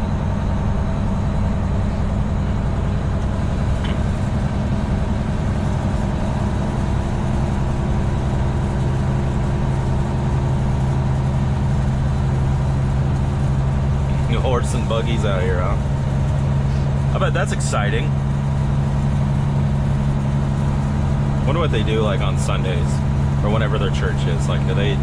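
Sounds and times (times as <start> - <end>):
diesel truck engine drone: 0.0 - 25.0
road noise: 0.0 - 25.0.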